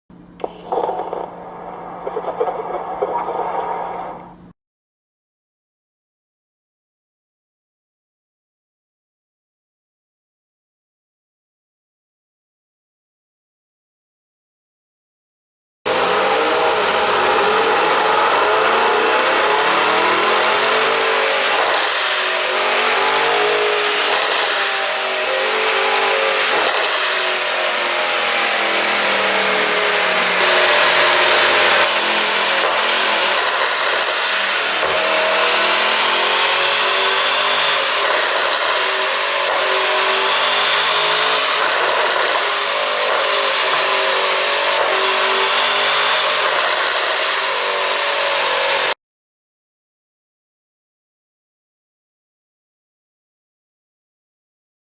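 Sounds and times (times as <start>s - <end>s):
car engine revving: 15.9s - 49.0s.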